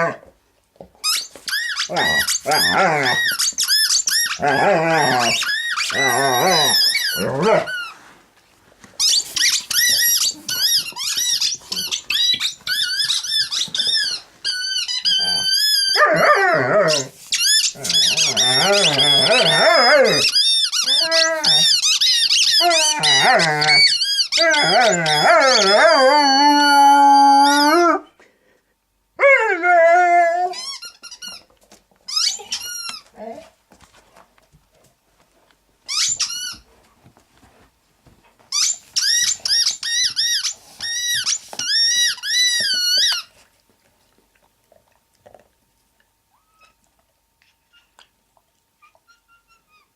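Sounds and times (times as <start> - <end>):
squeaky dog toy squeaking: 1.0 - 7.9, 9.0 - 16.0, 16.9 - 26.0, 30.5 - 31.5, 32.1 - 33.1, 35.9 - 36.6, 38.5 - 43.3
dog growling and grumbling: 1.9 - 3.3, 4.4 - 7.7, 17.8 - 20.2, 22.6 - 23.8.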